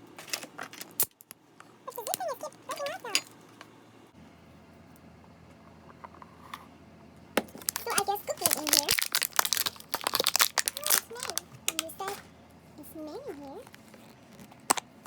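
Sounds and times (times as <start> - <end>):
plastic bag crinkling: 7.4 - 12.2.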